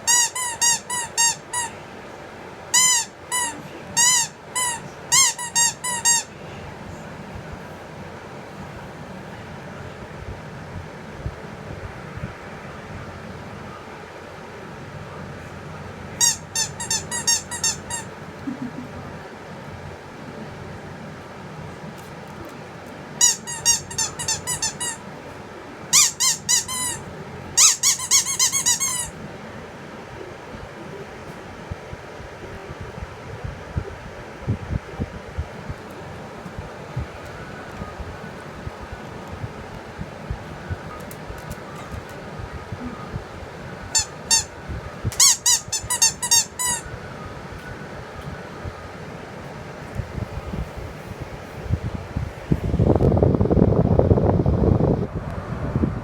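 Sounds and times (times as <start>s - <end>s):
squeaky toy squeaking: 0.0s - 1.7s, 2.7s - 6.3s, 16.2s - 18.2s, 23.2s - 25.0s, 25.9s - 27.0s, 27.6s - 29.2s, 43.9s - 44.5s, 45.1s - 46.8s.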